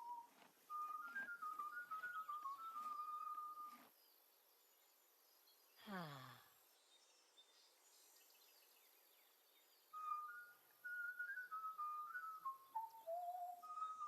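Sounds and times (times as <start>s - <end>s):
person whistling a tune: 0.0s - 3.8s, 10.0s - 14.0s
faint background hiss: 0.0s - 14.0s.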